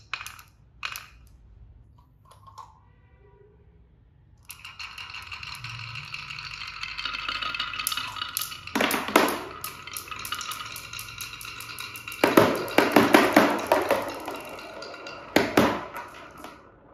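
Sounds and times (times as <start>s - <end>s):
dense clattering of marbles: 4.4s - 16.9s
marbles rolling down wooden run: 4.4s - 16.9s.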